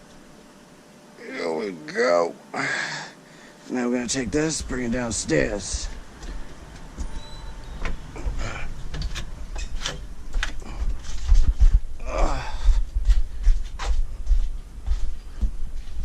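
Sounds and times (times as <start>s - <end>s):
footsteps thudding on stairs: 10.4s - 11.9s.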